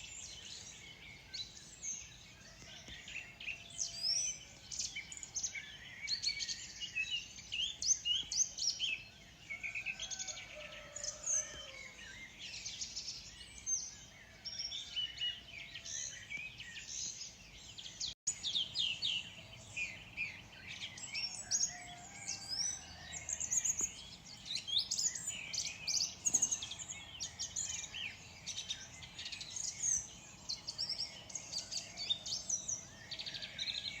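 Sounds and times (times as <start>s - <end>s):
birds chirping and trilling: 0.0s - 34.0s.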